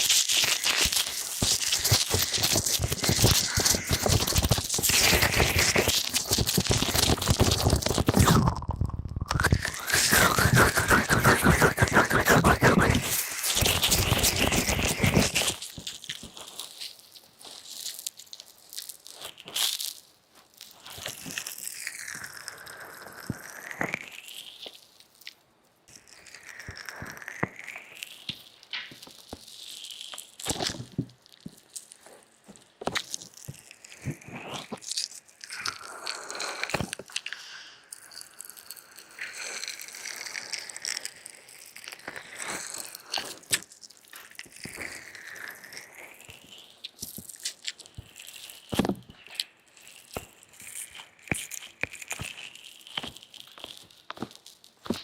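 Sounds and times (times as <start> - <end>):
hands rubbing on microphone: 0.0 - 16.6.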